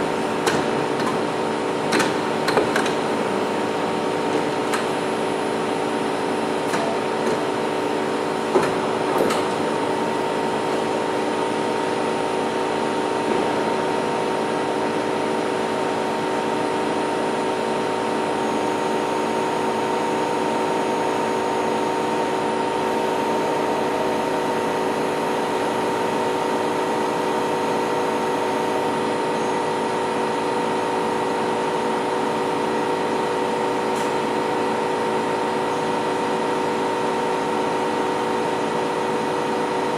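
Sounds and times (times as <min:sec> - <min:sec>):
milling machine humming: 0:00.0 - 0:15.8, 0:17.8 - 0:39.9.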